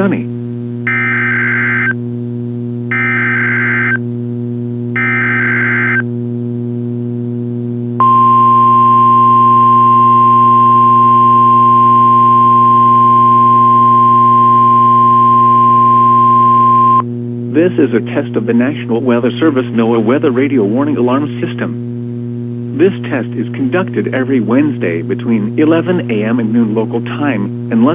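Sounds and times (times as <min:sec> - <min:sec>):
steady low hum: 0:00.0 - 0:27.9
loud steady alarm tone: 0:00.9 - 0:02.0, 0:02.9 - 0:04.0, 0:05.0 - 0:06.0, 0:08.0 - 0:17.0.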